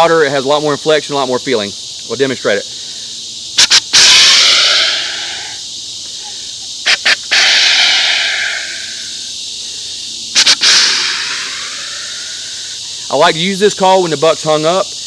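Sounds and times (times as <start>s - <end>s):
deer call snort and wheeze: 3.7s - 5.6s, 6.2s - 9.3s.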